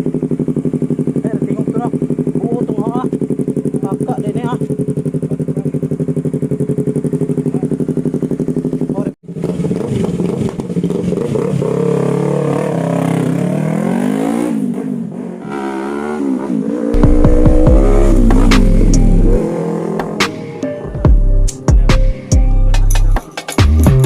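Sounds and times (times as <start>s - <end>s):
motorcycle engine idling and revving: 0.0s - 20.4s
loud low drone: 16.9s - 20.2s.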